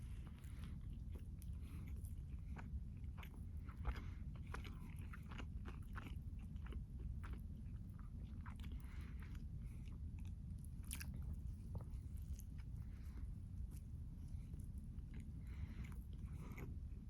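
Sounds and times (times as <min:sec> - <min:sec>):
low steady hum: 0:00.0 - 0:17.0
person chewing crunchy food: 0:00.0 - 0:17.0.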